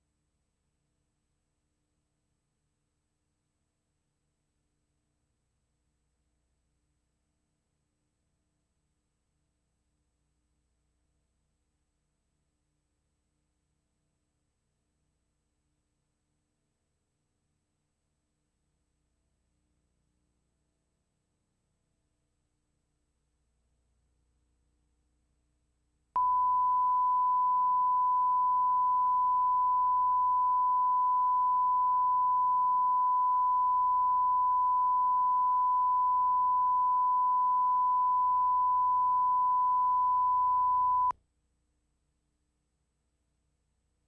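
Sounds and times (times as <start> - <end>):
faint low hum: 23.5 - 41.1
steady test tone: 26.2 - 41.1.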